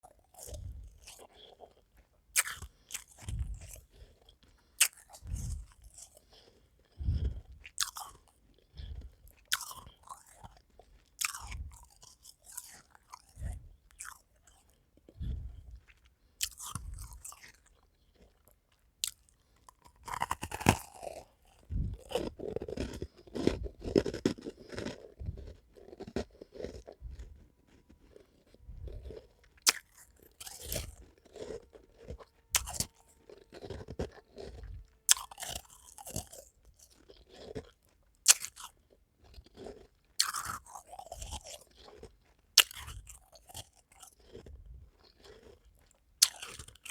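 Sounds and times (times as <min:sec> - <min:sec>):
person crunching ice: 0:19.8 - 0:46.9.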